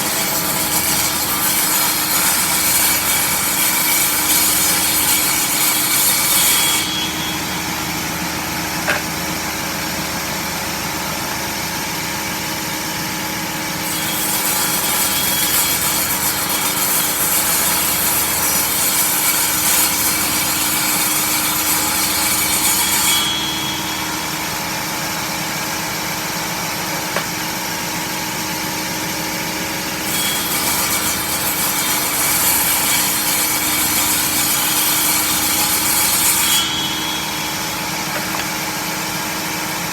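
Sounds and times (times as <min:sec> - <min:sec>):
saw cutting wood: 0:00.0 - 0:39.9
power saw motor hum: 0:23.6 - 0:39.9.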